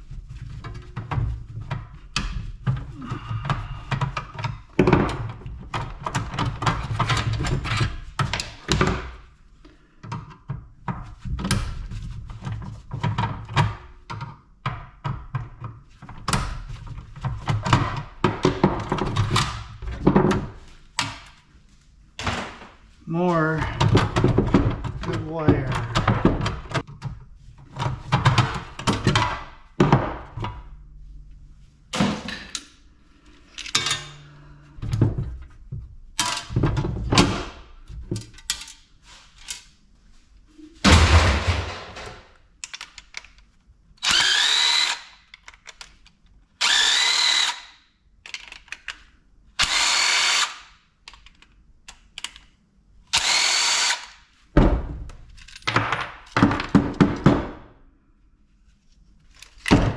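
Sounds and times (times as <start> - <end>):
heavy thud: 40.8 - 42.3
scrap parts clattering: 40.8 - 43.0
power drill whining: 44.0 - 45.2, 46.6 - 47.7, 49.6 - 50.7, 53.1 - 54.2.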